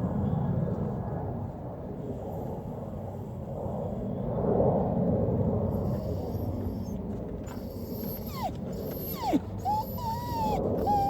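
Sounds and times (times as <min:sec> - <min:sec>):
dog whining: 0:05.7 - 0:11.0.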